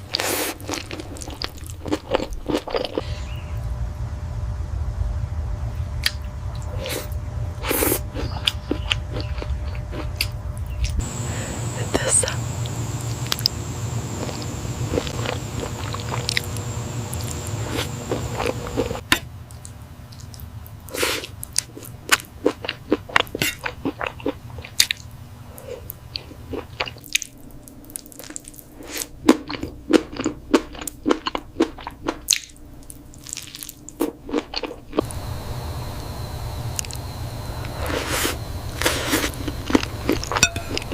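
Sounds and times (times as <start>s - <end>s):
wet chewing and biting: 0.0s - 3.0s, 7.7s - 11.0s, 13.2s - 25.1s, 25.7s - 35.2s, 37.6s - 40.9s
steady hum with high whine: 0.0s - 30.9s, 32.2s - 40.9s.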